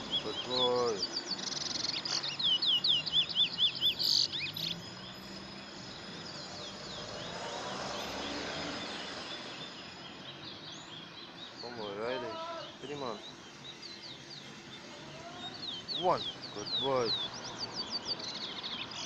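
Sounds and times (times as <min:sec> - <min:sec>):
bullfinch singing whistled notes: 0:00.0 - 0:14.4
faint bird chirping: 0:00.0 - 0:19.0.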